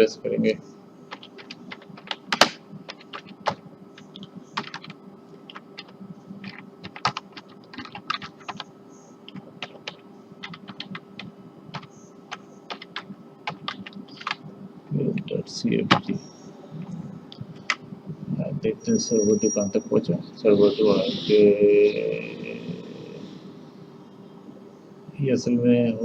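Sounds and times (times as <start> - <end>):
steady low hum: 0.0 - 26.0
typing on computer keyboard: 1.1 - 8.6, 9.3 - 11.9, 12.7 - 14.4.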